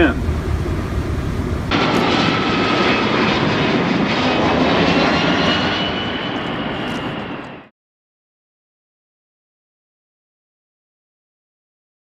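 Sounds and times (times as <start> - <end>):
jet engine noise on landing: 0.0 - 7.7.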